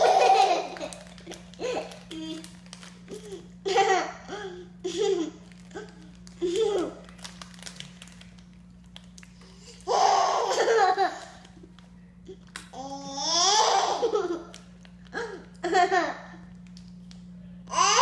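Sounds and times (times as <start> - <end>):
baby laughing: 0.0 - 2.3, 9.9 - 11.4, 12.8 - 14.6.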